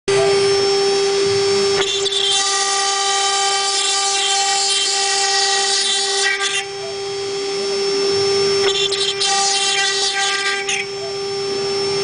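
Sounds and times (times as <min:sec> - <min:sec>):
router spindle high whine: 0:00.1 - 0:12.0
bit cutting composite panel hiss: 0:08.6 - 0:11.1.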